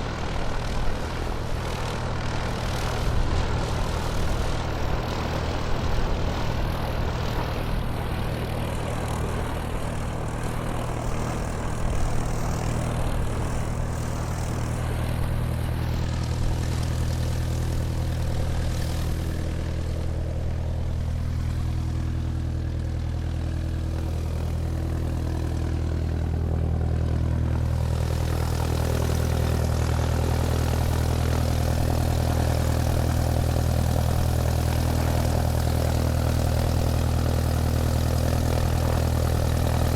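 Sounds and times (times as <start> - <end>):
airplane engine humming: 0.0 - 39.9.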